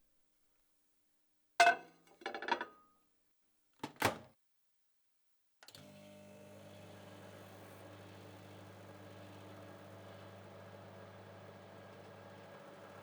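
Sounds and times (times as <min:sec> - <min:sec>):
microwave oven humming: 0:05.7 - 0:13.0.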